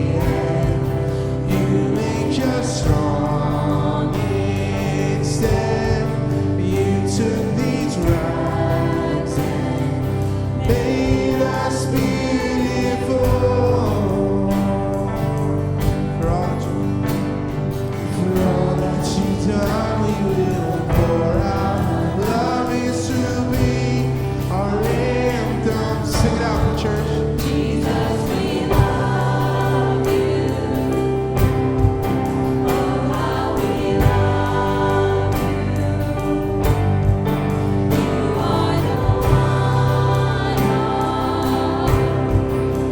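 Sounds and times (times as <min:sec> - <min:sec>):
voices singing along: 0:00.0 - 0:17.0, 0:17.7 - 0:42.9
church band playing: 0:00.0 - 0:42.9
drum hits: 0:25.7 - 0:42.9.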